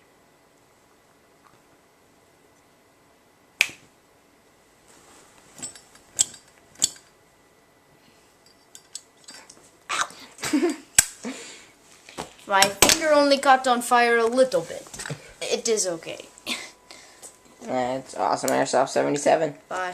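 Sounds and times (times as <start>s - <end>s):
rustling handling noise: 4.8s - 7.1s.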